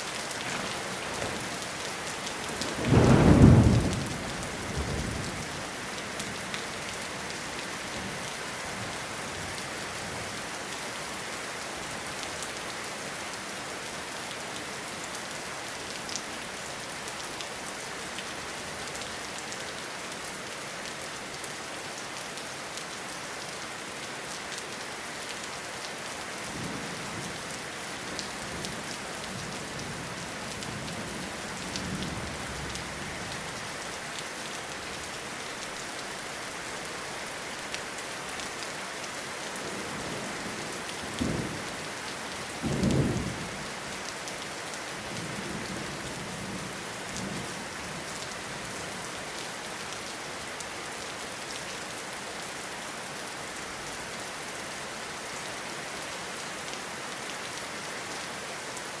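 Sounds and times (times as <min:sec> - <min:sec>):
rain hissing: 0:00.0 - 0:04.7
thunder rumble: 0:00.4 - 0:05.4.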